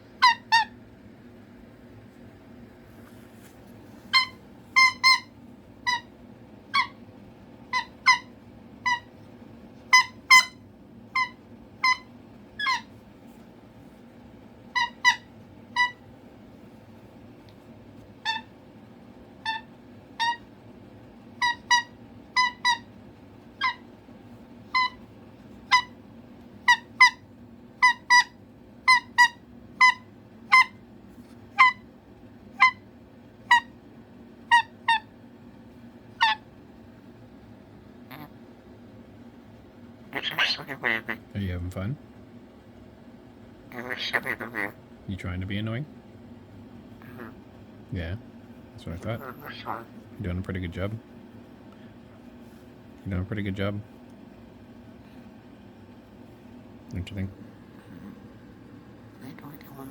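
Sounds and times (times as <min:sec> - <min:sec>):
cockatoo calling: 0:00.1 - 0:00.8, 0:04.1 - 0:07.0, 0:07.7 - 0:09.1, 0:09.9 - 0:13.0, 0:14.7 - 0:16.0, 0:18.2 - 0:18.5, 0:19.4 - 0:20.5, 0:21.4 - 0:23.0, 0:23.6 - 0:23.9, 0:24.7 - 0:25.1, 0:25.7 - 0:26.0, 0:26.6 - 0:30.8, 0:31.5 - 0:31.9, 0:32.5 - 0:33.8, 0:34.5 - 0:35.2, 0:36.1 - 0:36.5, 0:38.0 - 0:38.5, 0:40.1 - 0:41.4, 0:43.7 - 0:44.8, 0:46.9 - 0:47.5, 0:49.0 - 0:50.2, 0:57.7 - 0:59.9.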